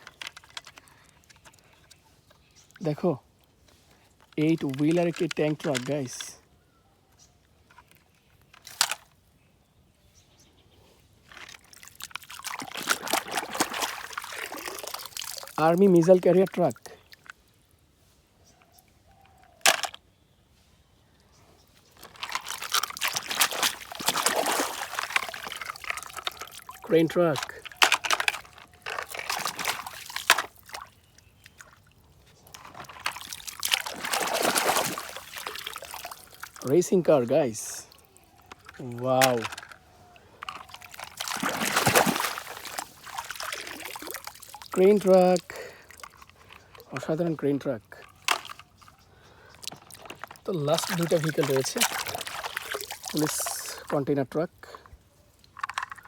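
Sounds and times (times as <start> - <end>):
water pouring and splashing: 11.3 - 17.3, 22.0 - 48.9, 49.5 - 54.4.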